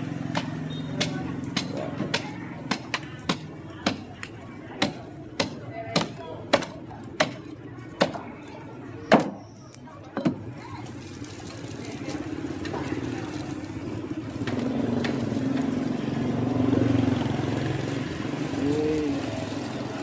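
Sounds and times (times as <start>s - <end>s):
motorbike engine running: 0.0s - 4.2s, 11.2s - 20.0s
cleaver chopping on a block: 0.3s - 8.3s.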